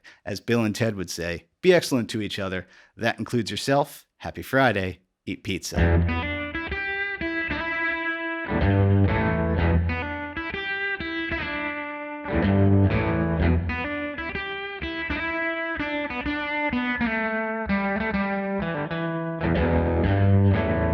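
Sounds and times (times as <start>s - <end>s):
overdriven electric guitar: 5.8s - 20.9s.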